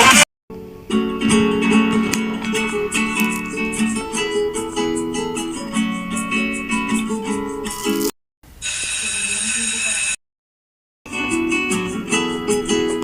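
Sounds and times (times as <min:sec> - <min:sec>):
plucked acoustic guitar music: 0:00.6 - 0:08.1, 0:11.1 - 0:13.0.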